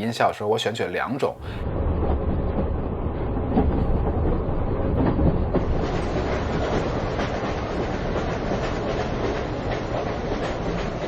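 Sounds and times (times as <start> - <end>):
train carriage rumble: 0.0 - 11.0
wheels clattering on rail joints: 3.5 - 11.0.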